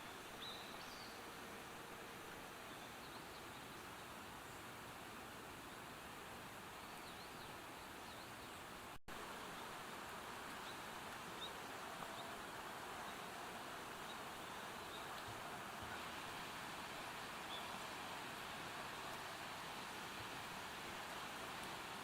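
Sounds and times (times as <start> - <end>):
steady hiss: 0.0 - 22.0.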